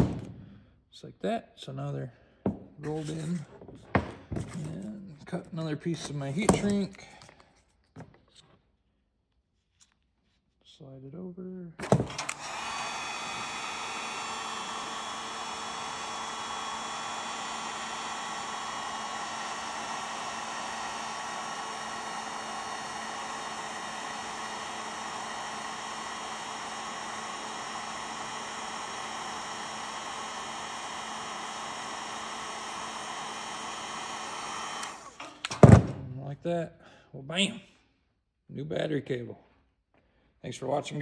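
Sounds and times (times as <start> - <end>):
heat gun blowing: 0.0 - 0.7, 11.8 - 36.0.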